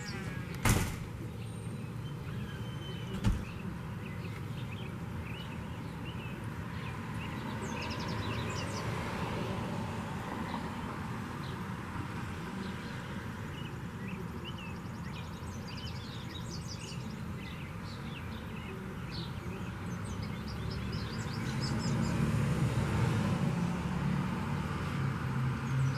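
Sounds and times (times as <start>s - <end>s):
small birds chirping: 0.0s - 22.6s.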